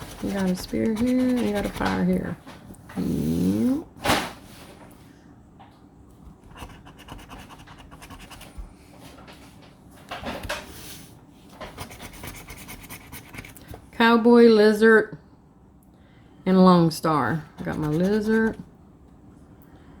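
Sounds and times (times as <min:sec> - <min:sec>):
scratching a lottery ticket: 0:00.0 - 0:02.4, 0:06.5 - 0:08.6, 0:11.7 - 0:13.6, 0:17.4 - 0:18.6.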